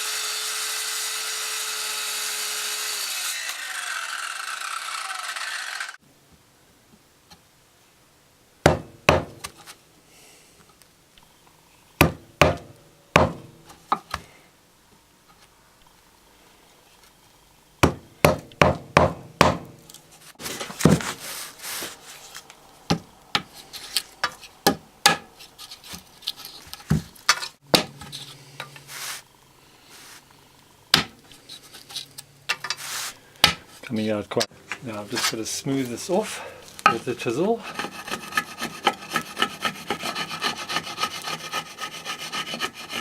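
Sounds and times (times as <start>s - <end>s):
hammer knocking on wood: 8.7s - 9.4s, 12.0s - 13.5s, 17.8s - 19.7s
wood scraping and rubbing: 20.1s - 22.6s, 25.4s - 29.3s, 31.2s - 34.0s, 34.9s - 43.0s.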